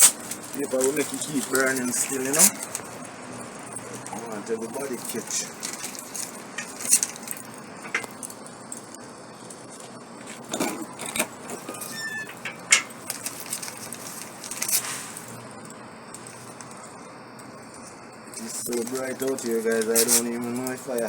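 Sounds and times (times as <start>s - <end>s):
fire crackling and popping: 0.0s - 21.0s.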